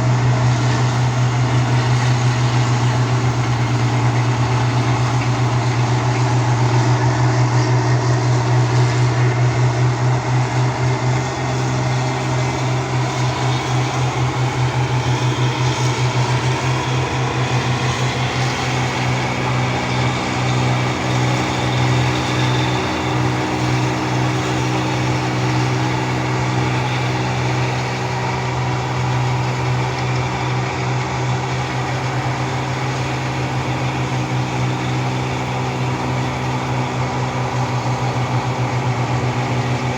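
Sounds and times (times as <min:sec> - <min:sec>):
combine harvester engine droning: 0:00.0 - 0:39.9.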